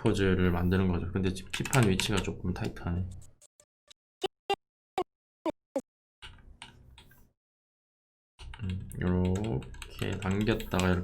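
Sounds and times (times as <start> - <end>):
computer keyboard clicks: 8.4 - 11.0.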